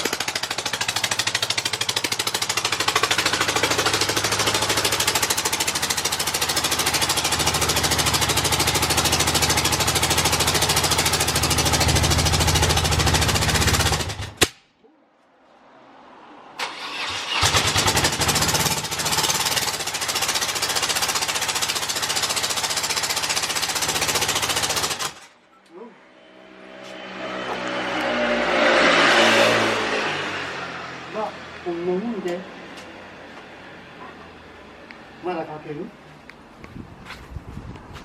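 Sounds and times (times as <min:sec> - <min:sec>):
motorcycle engine idling unevenly: 0:00.0 - 0:14.2
electric starter cranking: 0:16.6 - 0:25.3.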